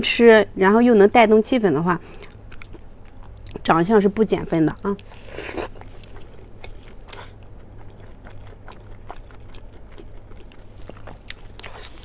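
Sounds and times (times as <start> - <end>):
person chewing crunchy food: 2.1 - 3.7, 4.7 - 12.0.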